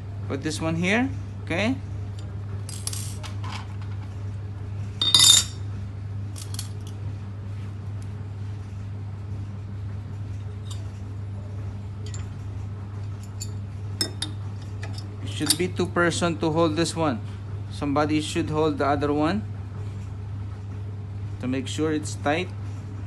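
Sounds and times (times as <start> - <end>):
steady low hum: 0.0 - 23.0
metal parts clinking: 2.7 - 3.7, 5.0 - 5.6, 6.4 - 7.0.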